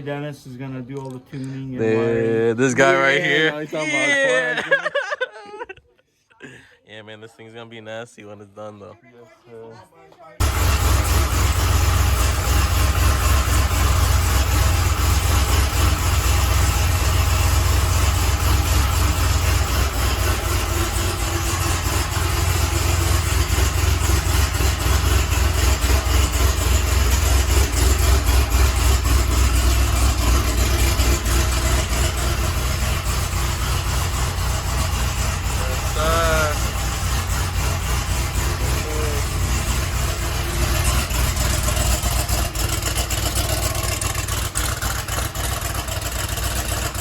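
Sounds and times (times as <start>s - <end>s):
car engine running: 10.4s - 47.0s.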